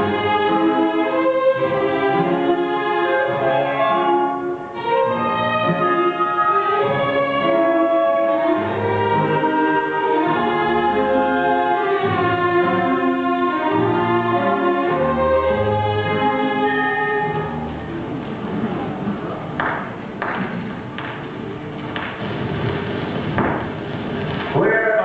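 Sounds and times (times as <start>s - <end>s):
violins playing slow melody: 0.0s - 18.2s
orchestral bass line: 0.0s - 19.5s.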